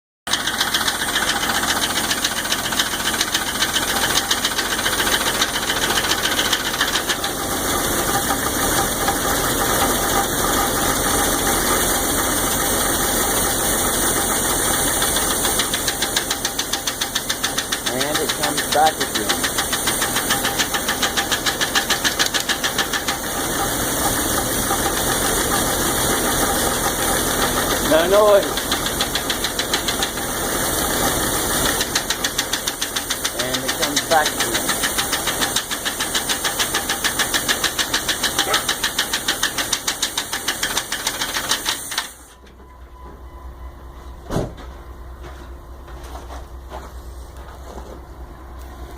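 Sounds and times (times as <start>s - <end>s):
valvetrain ticking: 0.3s - 7.4s, 15.0s - 25.6s, 26.5s - 30.3s
car engine idling: 0.3s - 42.4s.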